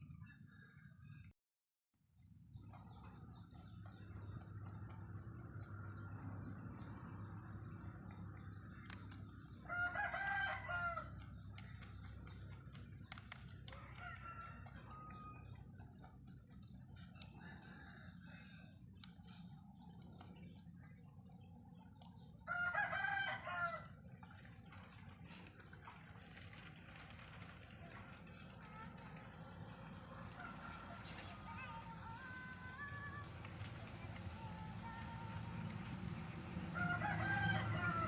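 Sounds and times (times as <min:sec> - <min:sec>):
rooster crowing: 0:09.6 - 0:11.2, 0:13.7 - 0:15.5, 0:22.4 - 0:24.0, 0:30.1 - 0:33.2, 0:36.7 - 0:38.0.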